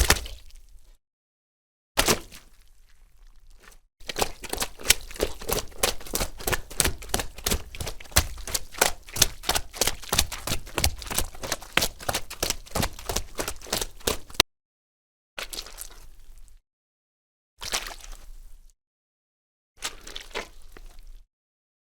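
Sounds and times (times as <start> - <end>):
footsteps squelching through mud: 3.6 - 14.4.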